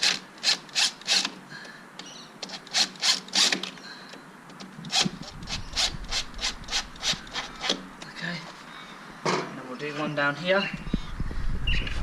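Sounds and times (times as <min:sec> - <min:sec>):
screw rasping into wall plug: 0:04.9 - 0:07.8.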